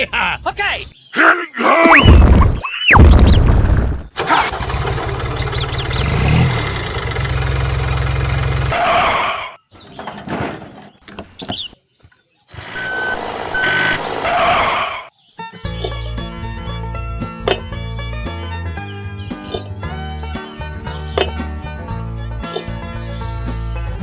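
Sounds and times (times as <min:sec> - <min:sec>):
vehicle engine starting and running: 0:03.2 - 0:08.8, 0:16.8 - 0:18.8, 0:19.4 - 0:24.0.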